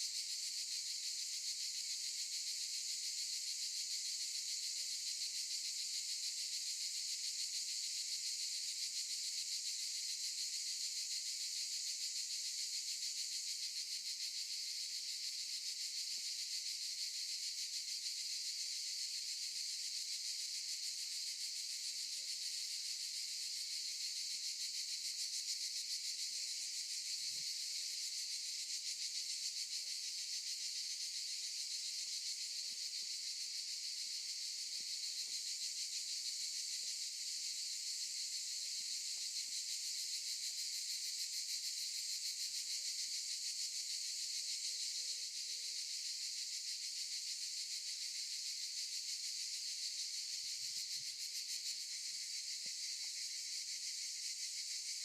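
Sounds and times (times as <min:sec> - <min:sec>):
cicadas buzzing: 0:14.2 - 0:42.4, 0:43.1 - 0:55.0.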